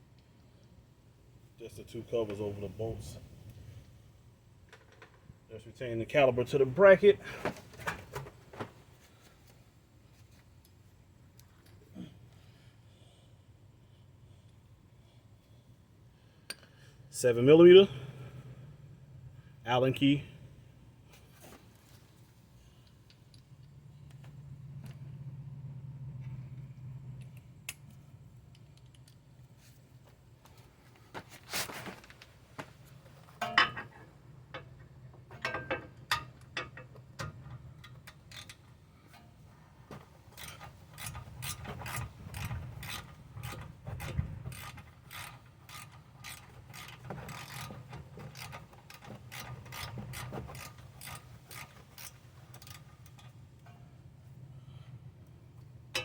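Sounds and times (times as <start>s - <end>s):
low steady hum: 0.0s - 56.0s
ratchet clicking: 37.8s - 38.7s, 40.4s - 53.3s.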